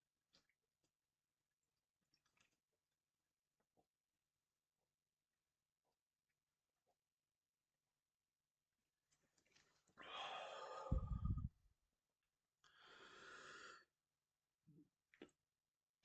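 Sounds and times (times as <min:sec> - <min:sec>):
man breathing heavily: 0:10.1 - 0:11.5.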